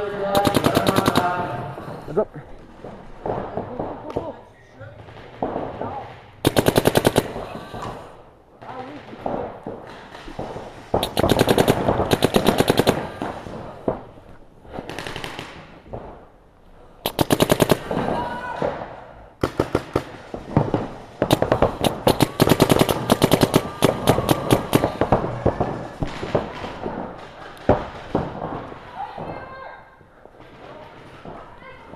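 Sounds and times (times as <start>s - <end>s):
paintball markers firing: 0.3s - 1.5s, 6.4s - 8.1s, 10.9s - 13.4s, 17.0s - 18.2s, 21.2s - 25.6s.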